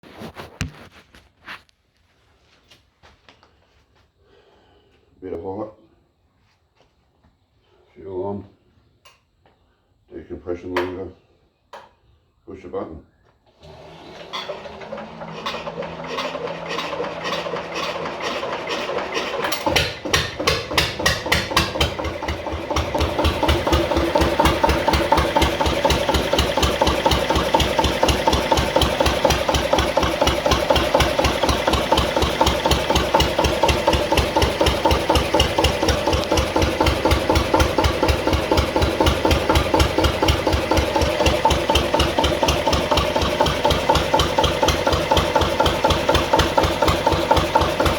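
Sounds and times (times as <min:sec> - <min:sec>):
diesel generator engine starting: 0:13.5 - 0:47.9.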